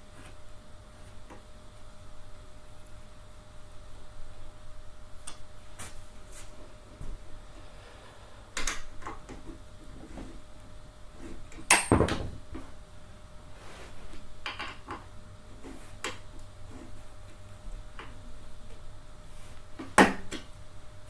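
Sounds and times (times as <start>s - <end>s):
loud clunk: 11.7s - 12.4s.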